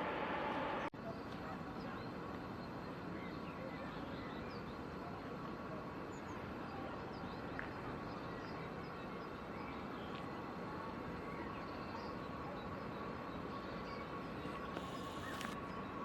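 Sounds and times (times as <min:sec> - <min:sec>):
low background noise: 0:00.0 - 0:16.0
faint bird chirps: 0:11.2 - 0:16.0.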